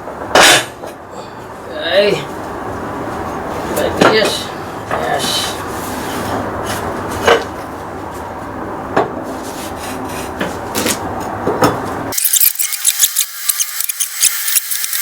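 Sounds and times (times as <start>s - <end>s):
steady shop hum: 0.0s - 15.0s
tools scraping and rubbing: 9.3s - 11.0s, 12.1s - 15.0s.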